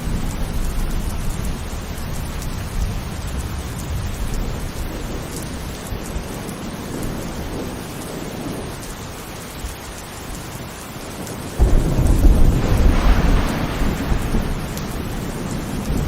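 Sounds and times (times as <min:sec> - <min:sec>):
heavy rain falling: 0:00.0 - 0:16.0
thunderclap with deep rumble: 0:11.2 - 0:16.0.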